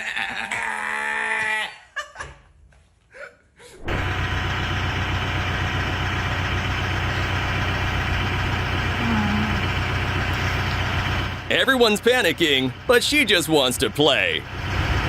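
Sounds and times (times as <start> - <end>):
engine running: 3.9 - 15.0.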